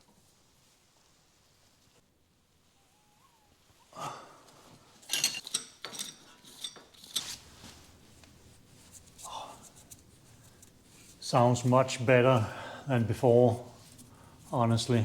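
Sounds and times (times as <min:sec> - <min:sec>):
light metallic clinks and rattles: 0:05.0 - 0:07.4.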